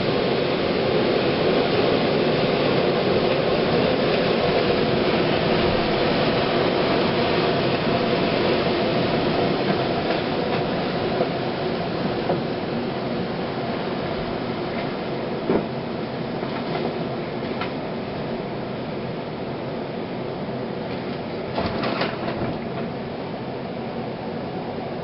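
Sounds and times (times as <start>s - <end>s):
strong wind gust rushing: 0.0s - 19.0s.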